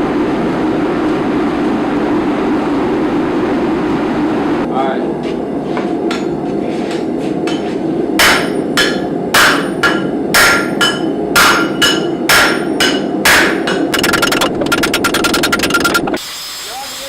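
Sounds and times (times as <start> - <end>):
hammer striking metal on anvil: 6.1 - 14.1.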